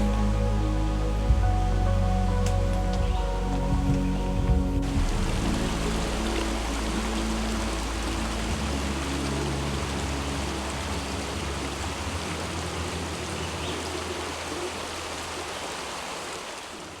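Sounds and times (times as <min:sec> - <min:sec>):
low humming tones: 0:00.0 - 0:15.3
rush of flowing water: 0:00.0 - 0:17.0.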